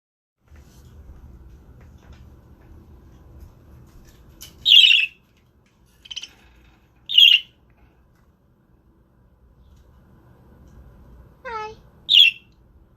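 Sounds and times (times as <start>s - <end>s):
faint low hum: 0.5s - 12.9s
budgerigar harsh calls: 12.1s - 12.4s.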